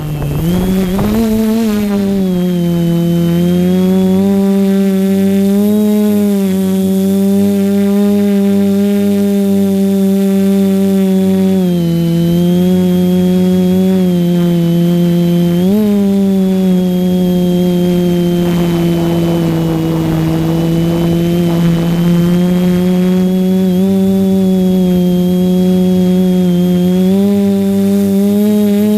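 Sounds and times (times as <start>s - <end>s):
wind noise: 0.0s - 4.4s, 17.8s - 23.4s
drone propellers whirring: 0.0s - 28.9s.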